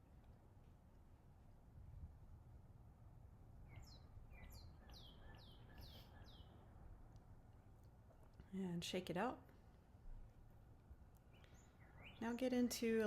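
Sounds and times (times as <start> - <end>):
songbird singing: 3.6 - 6.9, 11.2 - 13.0.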